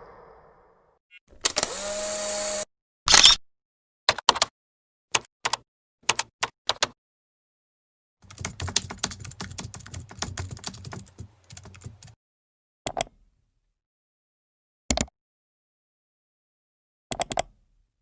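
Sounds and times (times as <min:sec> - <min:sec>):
keyboard typing: 0:08.2 - 0:12.2.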